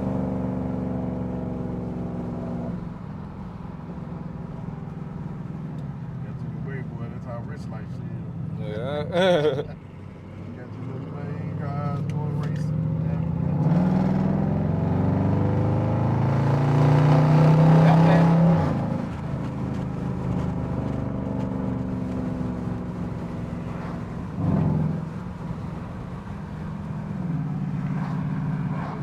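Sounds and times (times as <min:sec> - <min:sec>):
car engine accelerating and revving: 0:00.0 - 0:29.0.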